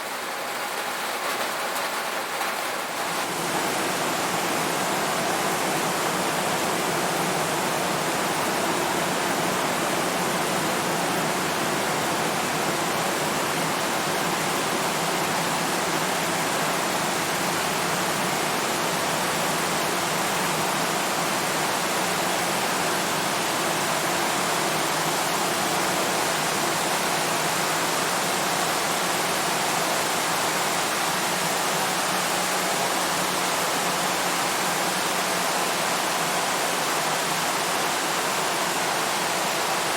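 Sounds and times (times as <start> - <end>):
rain on a tin roof: 0.0 - 39.9.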